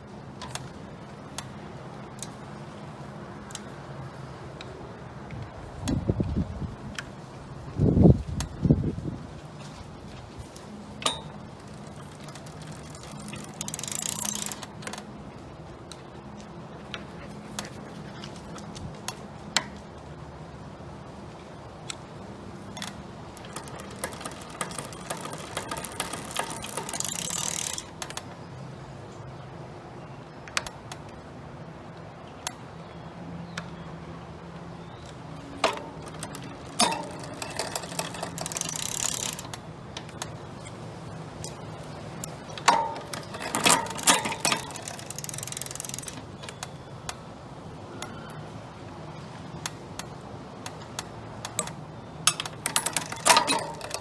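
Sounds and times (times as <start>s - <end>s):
bicycle chain running over cassette: 11.1s - 15.0s, 22.7s - 28.2s, 35.6s - 40.7s, 41.4s - 46.8s, 51.4s - 54.0s
sharp clicks: 22.7s - 28.4s, 35.0s - 47.2s.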